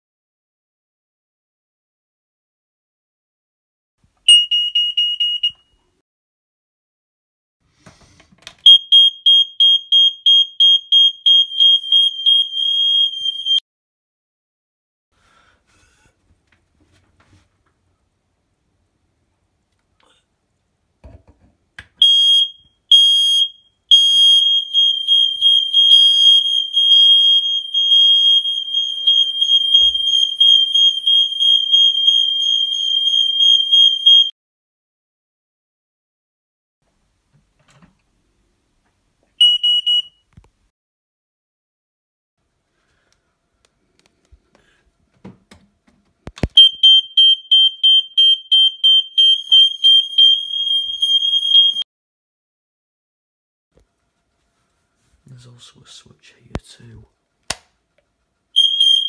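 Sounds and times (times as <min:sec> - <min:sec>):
smoke alarm beeps and tone: 0:04.3 - 0:05.8, 0:08.6 - 0:13.6, 0:22.0 - 0:34.3, 0:39.4 - 0:40.3, 0:46.5 - 0:51.9, 0:58.6 - 0:59.0.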